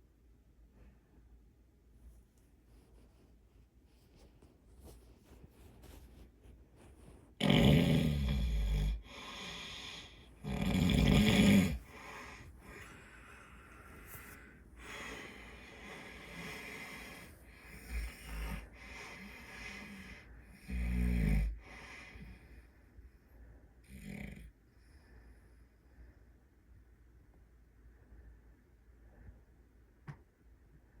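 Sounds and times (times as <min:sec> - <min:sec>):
quiet breathing: 0:00.1 - 0:31.0
man snoring: 0:07.4 - 0:13.6, 0:14.2 - 0:22.4, 0:23.9 - 0:24.5.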